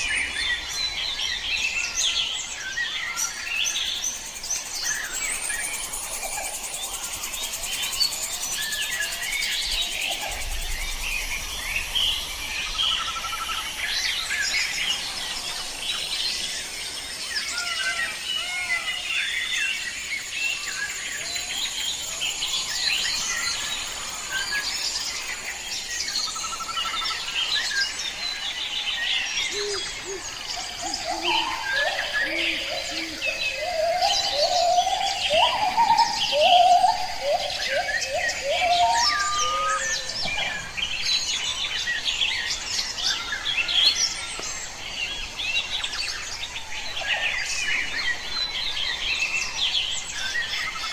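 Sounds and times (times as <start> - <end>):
small birds chirping: 0.0 - 50.9
steady high hiss: 3.4 - 28.6.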